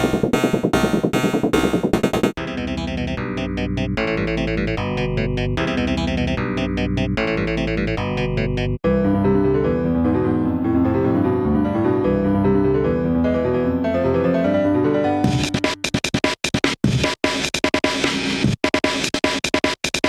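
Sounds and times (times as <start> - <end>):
electronic keyboard music: 0.0 - 15.7.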